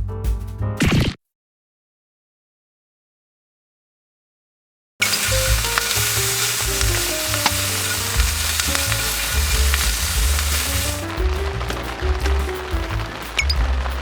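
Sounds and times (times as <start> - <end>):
bass-heavy background music: 0.0 - 0.8, 5.0 - 14.0
loud steady hiss: 5.0 - 14.0.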